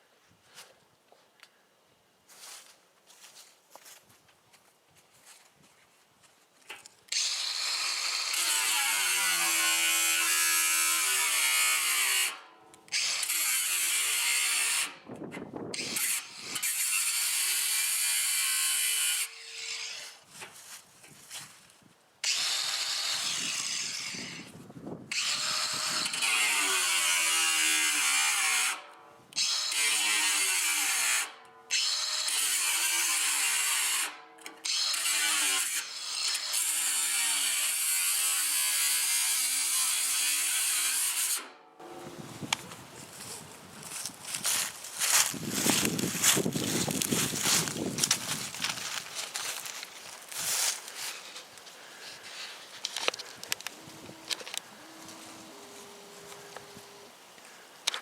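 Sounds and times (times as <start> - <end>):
angle grinder cutting steel: 7.1 - 15.0, 15.8 - 20.2, 22.2 - 24.5, 25.1 - 42.2.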